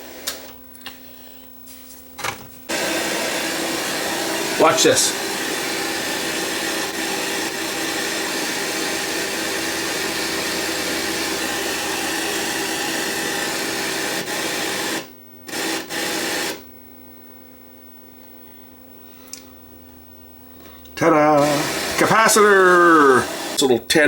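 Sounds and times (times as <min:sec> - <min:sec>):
low electrical hum: 0:00.0 - 0:02.7, 0:15.0 - 0:15.5, 0:16.6 - 0:24.0
loud static hiss: 0:02.7 - 0:16.7, 0:21.0 - 0:24.0.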